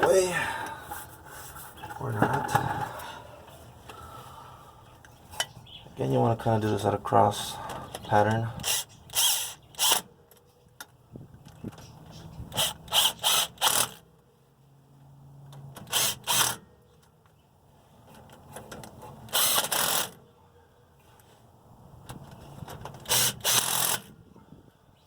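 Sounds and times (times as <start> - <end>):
power driver running bolts: 19.3 - 20.2, 22.8 - 24.1.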